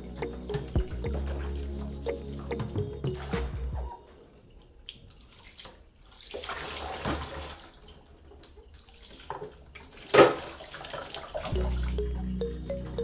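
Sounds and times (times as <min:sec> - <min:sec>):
tap water splashing in a sink: 0:04.9 - 0:11.5.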